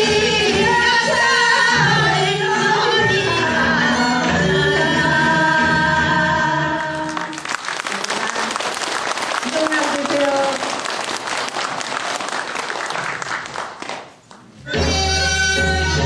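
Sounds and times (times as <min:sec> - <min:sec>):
live singing with accompaniment: 0:00.0 - 0:08.5, 0:14.4 - 0:16.0
audience applause: 0:07.1 - 0:14.4.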